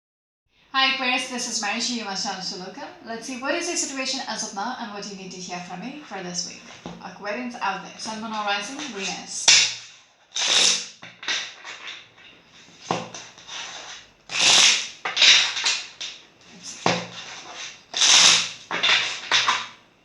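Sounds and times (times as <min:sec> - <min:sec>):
cards being shuffled: 0:08.3 - 0:19.8.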